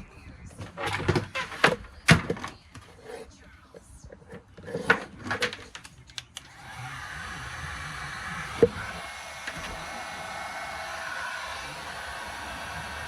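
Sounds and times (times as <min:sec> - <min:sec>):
heat gun blowing: 0:06.4 - 0:13.0.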